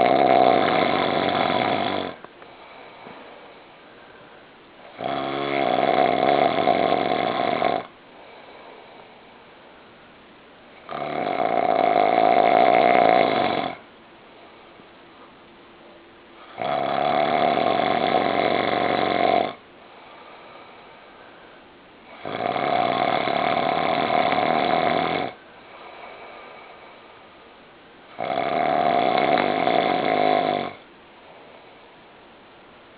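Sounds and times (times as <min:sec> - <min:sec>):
man snoring loudly: 0:00.0 - 0:02.2, 0:04.8 - 0:07.9, 0:10.8 - 0:13.8, 0:16.5 - 0:19.6, 0:22.1 - 0:25.4, 0:28.1 - 0:30.8
faint breath: 0:02.2 - 0:04.7, 0:08.0 - 0:10.0, 0:19.8 - 0:21.8, 0:25.4 - 0:27.4, 0:31.1 - 0:32.2.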